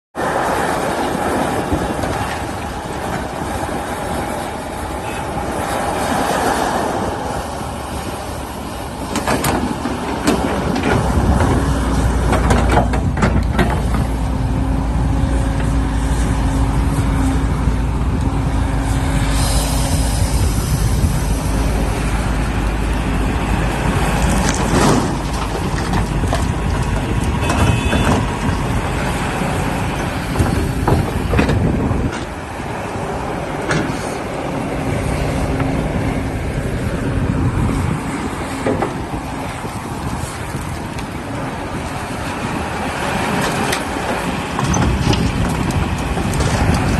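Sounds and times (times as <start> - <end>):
excavator diesel engine rumbling: 0.2 - 46.9
clanks and knocks: 9.1 - 14.2, 24.4 - 28.8, 29.9 - 32.4, 43.4 - 46.9.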